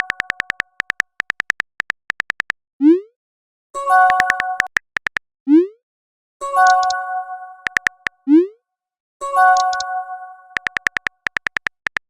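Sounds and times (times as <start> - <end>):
quick sharp clicks: 0.0 - 2.6, 4.1 - 5.2, 7.7 - 8.2, 10.6 - 12.0.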